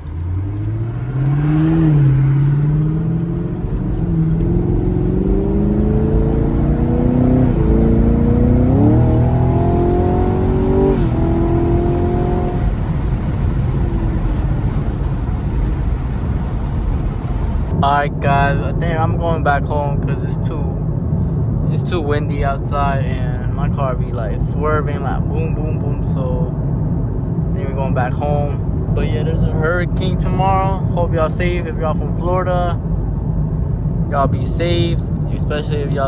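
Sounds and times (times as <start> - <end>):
car engine accelerating: 0.0 - 17.8
road and wind noise: 0.0 - 36.0.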